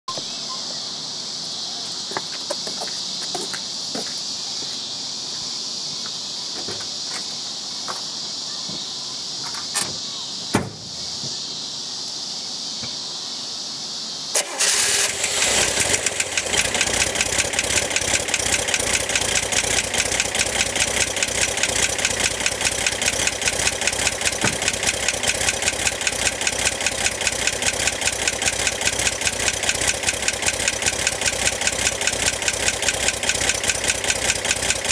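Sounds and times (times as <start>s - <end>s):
steady high hiss: 0.1s - 34.9s
car engine starting and idling: 14.4s - 34.9s
fast even engine ticking: 14.4s - 34.9s
sharp clicks: 14.4s - 34.9s.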